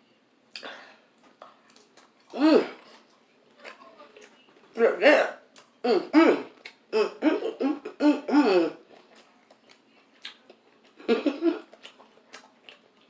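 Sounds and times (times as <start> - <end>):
woman laughing: 11.0 - 11.6.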